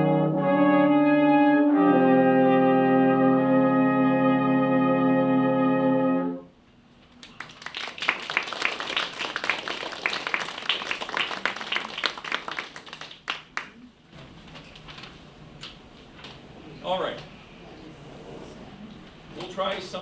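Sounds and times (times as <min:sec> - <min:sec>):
brass ensemble chord: 0:00.0 - 0:06.6
audience clapping: 0:07.1 - 0:16.4.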